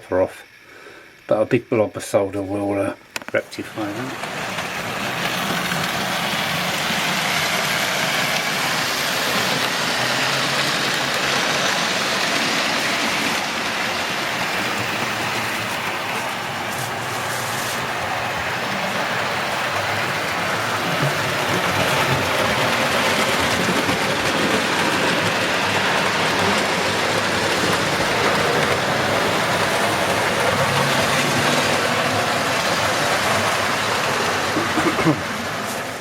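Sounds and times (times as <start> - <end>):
steady rushing noise: 3.6 - 34.6.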